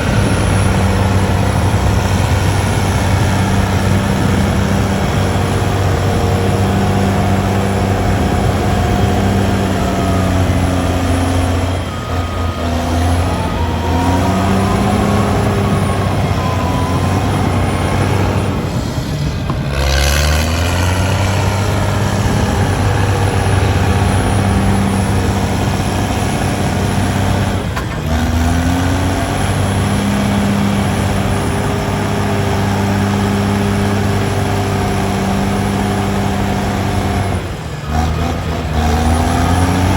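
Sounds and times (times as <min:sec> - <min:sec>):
heavy diesel engine under load: 0:00.0 - 0:39.9.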